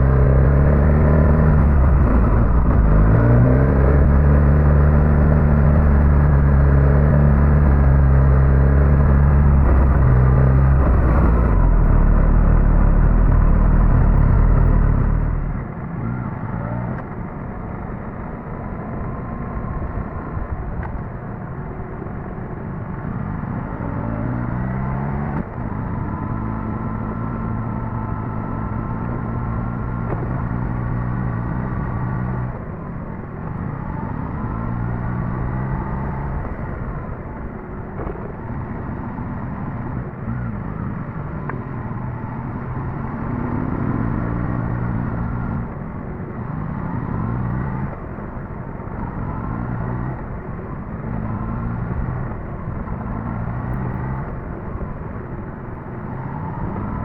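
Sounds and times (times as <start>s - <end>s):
motorcycle engine running: 0.0s - 16.3s.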